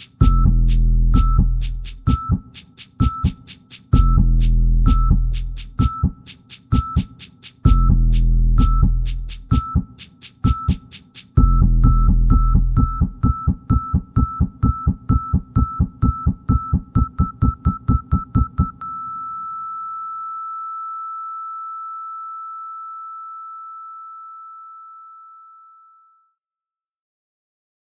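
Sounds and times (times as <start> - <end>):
steady high beep: 0.0 - 19.9
pulsing synthesized beep: 0.2 - 2.4, 4.0 - 6.0, 7.7 - 9.8, 11.4 - 19.7.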